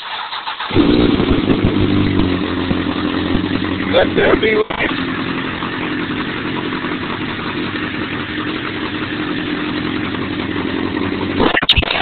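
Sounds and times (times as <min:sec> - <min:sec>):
motorcycle engine idling: 0:00.7 - 0:11.5.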